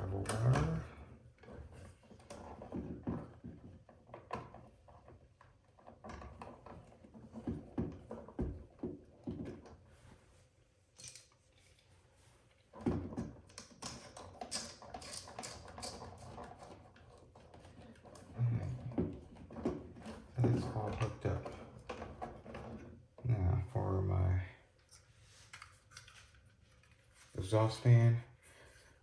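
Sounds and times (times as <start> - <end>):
clicks and scrapes of copper wire: 13.5 - 23.0.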